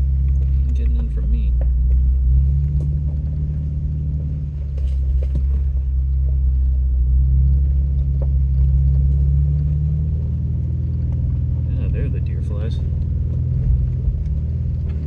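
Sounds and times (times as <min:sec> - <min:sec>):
engine running low: 0:00.0 - 0:15.0.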